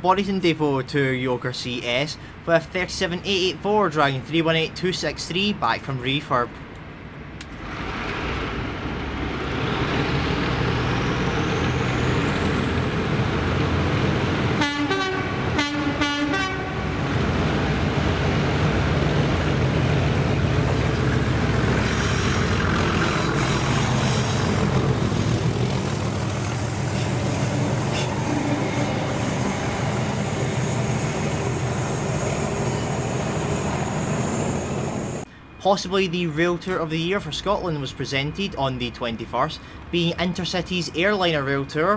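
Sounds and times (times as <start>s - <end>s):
diesel locomotive rumbling: 0.0s - 41.9s
train horn blasts: 14.6s - 17.1s.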